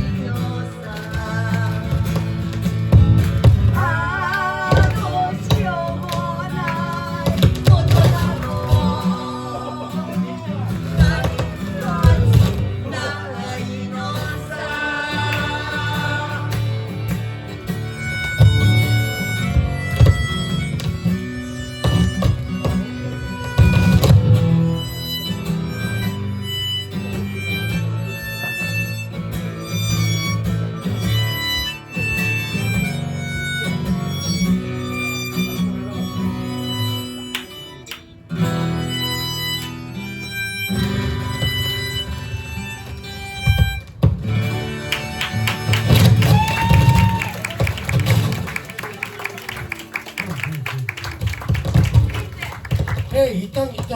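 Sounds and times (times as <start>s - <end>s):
band playing instrumental: 1.9s - 53.9s.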